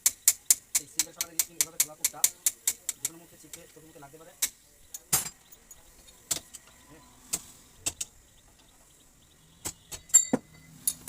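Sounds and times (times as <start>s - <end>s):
metal tools clinking: 10.0s - 11.0s.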